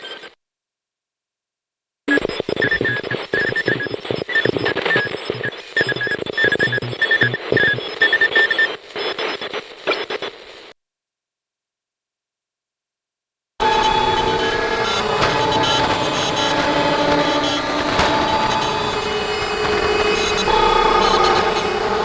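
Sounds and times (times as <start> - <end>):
crackling static: 2.1 - 10.8, 13.6 - 22.0
morse code beeps: 2.6 - 7.8, 13.6 - 22.0.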